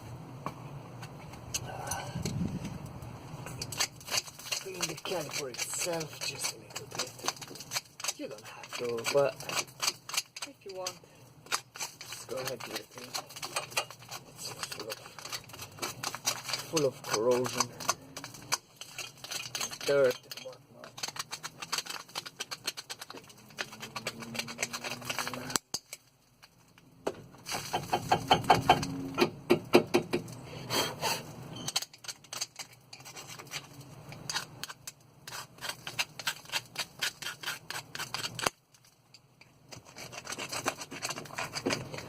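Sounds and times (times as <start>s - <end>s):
brush scrubbing metal: 39.8s - 42.0s.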